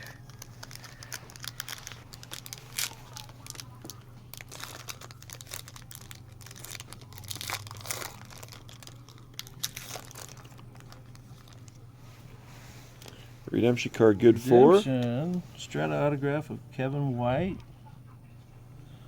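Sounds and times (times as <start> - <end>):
wrapper tearing and crinkling: 0.0 - 11.8
steady low hum: 0.0 - 19.0.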